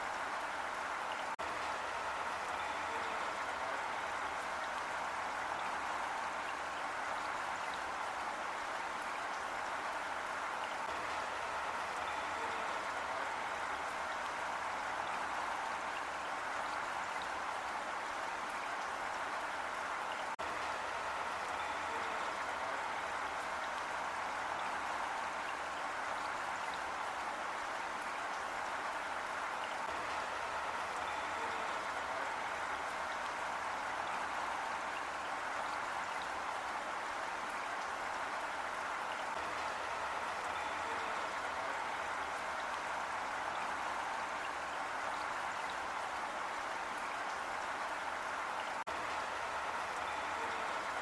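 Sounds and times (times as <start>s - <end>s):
heavy rain falling: 0.0s - 51.0s
scattered raindrop patters: 0.0s - 51.0s
heavy rain hiss: 28.6s - 51.0s.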